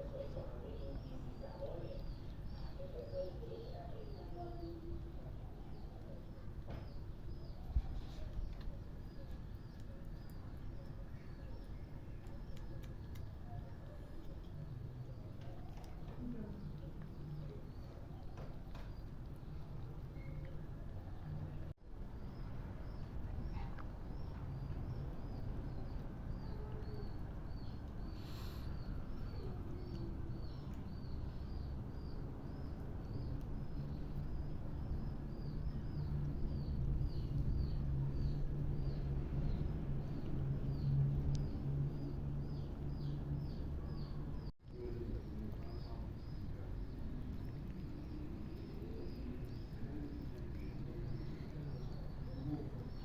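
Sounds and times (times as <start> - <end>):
low outdoor rumble: 0.0 - 53.0
small bird chirping: 22.4 - 53.0.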